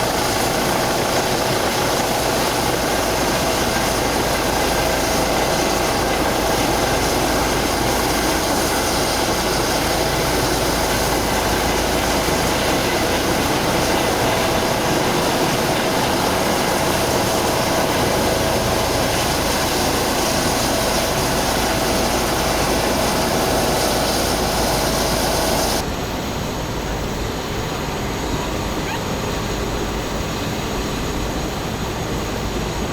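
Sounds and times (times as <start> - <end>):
engine droning: 0.0 - 25.8.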